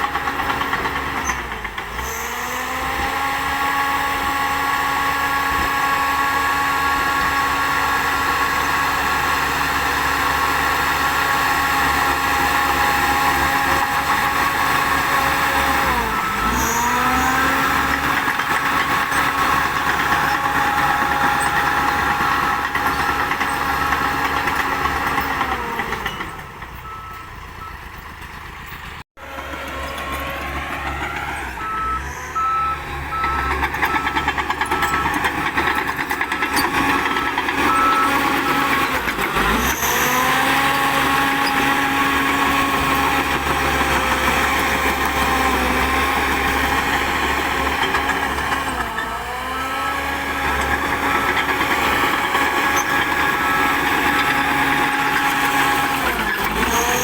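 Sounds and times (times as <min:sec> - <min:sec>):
bulldozer diesel engine: 0:00.0 - 0:57.0
reversing alarm beeping: 0:14.7 - 0:24.2, 0:24.8 - 0:28.0, 0:29.7 - 0:41.6, 0:50.5 - 0:55.9.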